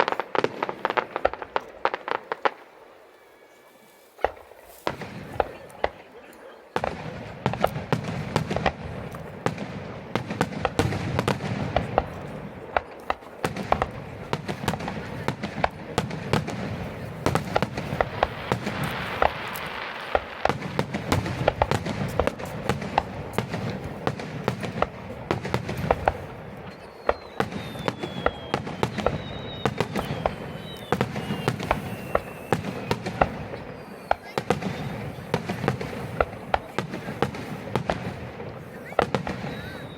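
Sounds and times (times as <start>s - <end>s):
fireworks bangs and crackles: 0.0s - 39.9s
fireworks whistles descending: 24.5s - 39.9s.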